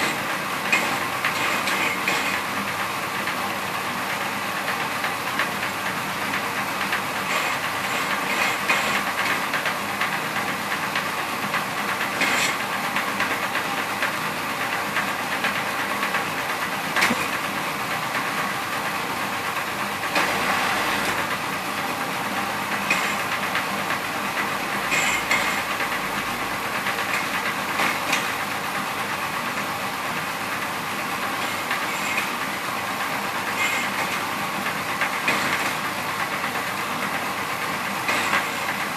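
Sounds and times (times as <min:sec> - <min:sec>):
skewer shaving machine rattling: 0:00.0 - 0:02.9, 0:04.6 - 0:13.8, 0:20.0 - 0:38.9
machine clacking: 0:00.0 - 0:03.4, 0:04.6 - 0:17.6, 0:20.0 - 0:29.7, 0:30.9 - 0:38.9.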